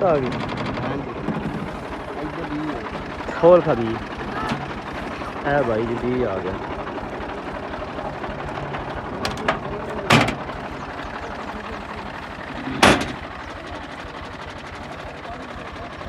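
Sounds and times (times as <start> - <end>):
tractor diesel engine idling: 0.0 - 16.0
loud knocks: 8.7 - 10.6.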